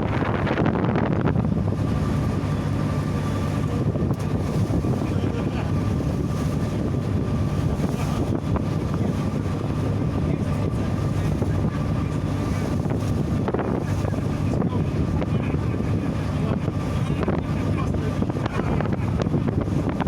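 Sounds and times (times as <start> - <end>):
wind rushing over microphone: 0.0 - 20.0.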